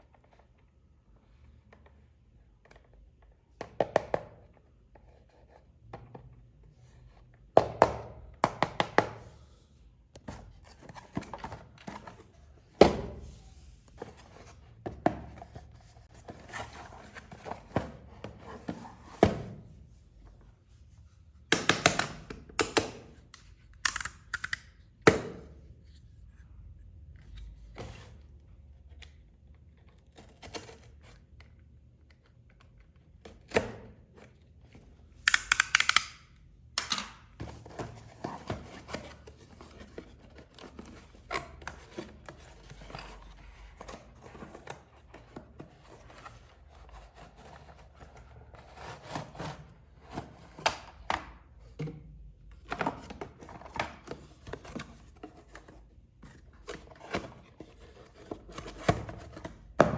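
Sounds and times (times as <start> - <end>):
packaging taps and clicks: 35.3 - 37.2.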